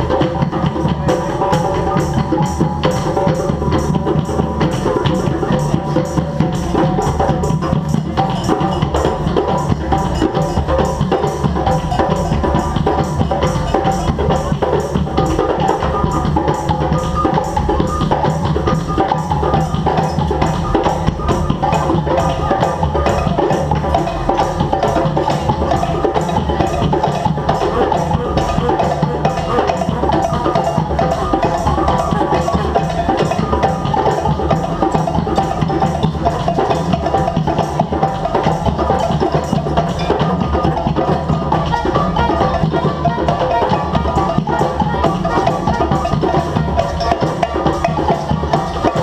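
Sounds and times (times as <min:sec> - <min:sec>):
drums and percussion: 0:00.0 - 0:49.0
street band playing: 0:00.0 - 0:49.0.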